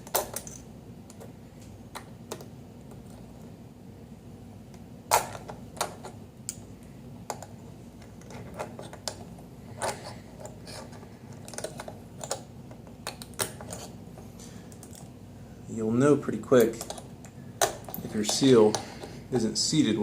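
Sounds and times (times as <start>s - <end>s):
metal parts clicking and knocking: 0.0s - 1.3s, 7.3s - 14.0s, 16.6s - 19.5s.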